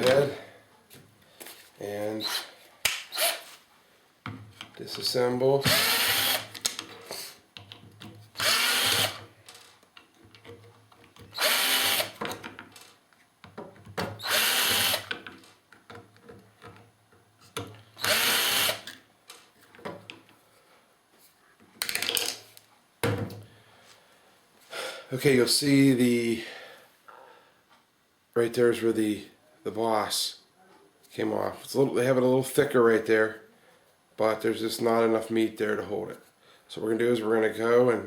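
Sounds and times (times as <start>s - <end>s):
power drill driving screws: 2.2s - 2.5s, 3.1s - 3.4s, 5.6s - 6.5s, 8.4s - 9.2s, 11.3s - 12.2s, 14.2s - 15.1s, 18.0s - 19.0s.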